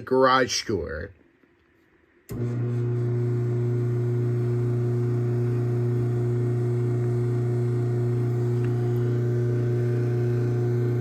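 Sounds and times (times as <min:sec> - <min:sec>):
garage door opener motor humming: 0:02.3 - 0:11.0.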